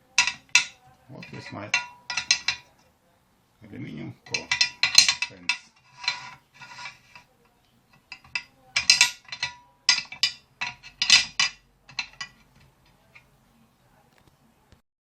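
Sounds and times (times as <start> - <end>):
metal parts clicking and knocking: 0.2 - 2.7, 4.3 - 7.2, 7.9 - 13.3.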